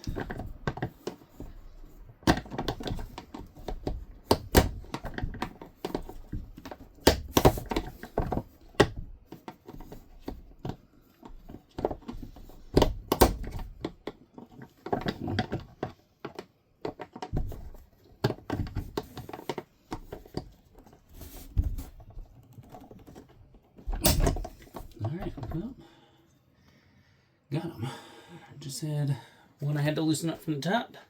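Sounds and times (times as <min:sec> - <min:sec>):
screwdriver clicks and knocks on plastic: 0:00.0 - 0:21.0.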